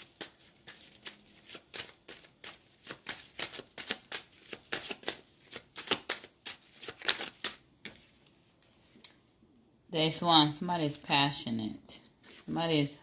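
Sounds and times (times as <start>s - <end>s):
cards being shuffled: 0.0s - 8.7s.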